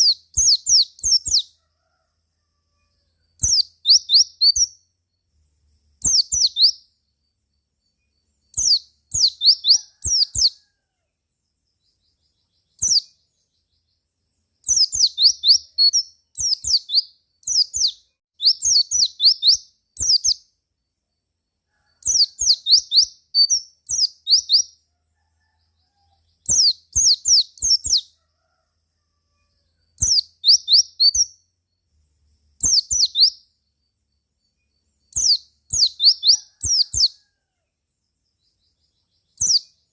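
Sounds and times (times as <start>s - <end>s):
bird chirping high-pitched: 0.0s - 1.6s, 3.4s - 4.9s, 6.0s - 7.0s, 8.0s - 10.6s, 11.9s - 13.6s, 14.6s - 20.6s, 22.0s - 24.8s, 26.4s - 28.1s, 30.0s - 31.5s, 32.6s - 33.5s, 34.7s - 37.2s, 38.7s - 39.9s.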